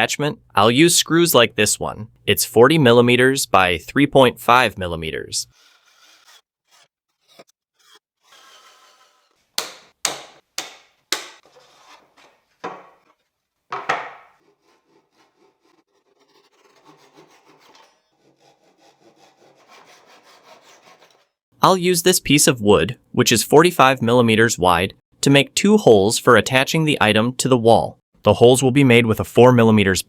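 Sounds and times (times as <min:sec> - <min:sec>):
wood rubbing and scraping: 0:05.4 - 0:21.2
wooden knocks: 0:09.6 - 0:11.5, 0:12.6 - 0:14.4.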